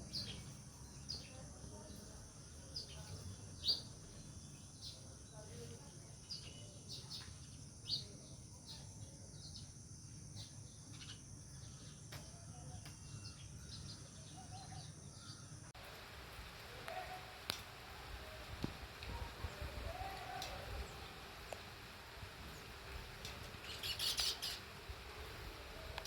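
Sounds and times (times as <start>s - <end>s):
sparrows chirping: 0.0s - 15.6s, 18.9s - 26.0s.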